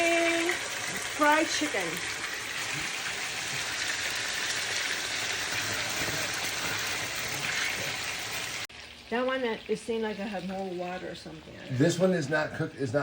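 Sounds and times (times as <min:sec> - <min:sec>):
chicken frying in oil: 0:00.0 - 0:12.5.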